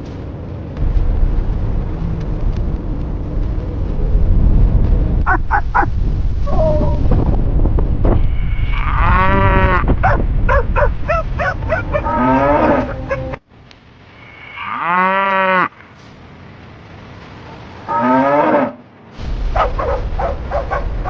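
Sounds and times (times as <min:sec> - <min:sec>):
loud low rushing noise: 0:00.0 - 0:14.1, 0:19.0 - 0:21.0
cow mooing: 0:08.7 - 0:09.8, 0:11.7 - 0:13.3.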